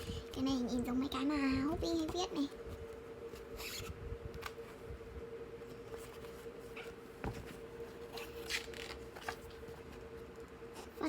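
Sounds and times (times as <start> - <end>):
faint hum: 0.0 - 11.0
paper pages rustling: 5.9 - 10.0.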